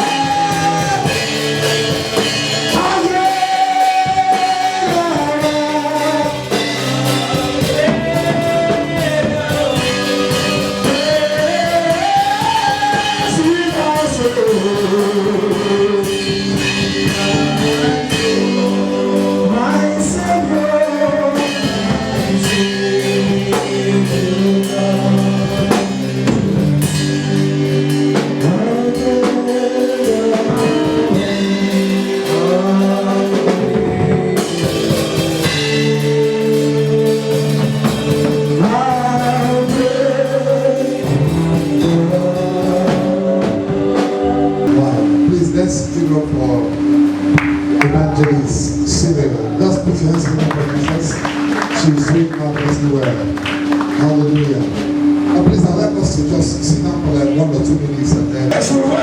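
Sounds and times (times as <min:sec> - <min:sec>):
band accompaniment: 0:00.0 - 0:59.0
lead singer singing: 0:00.0 - 0:59.0.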